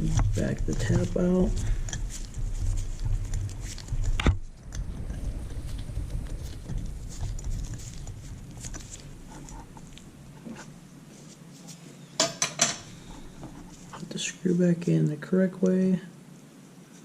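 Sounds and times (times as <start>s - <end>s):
handling rumble: 0.0s - 11.6s.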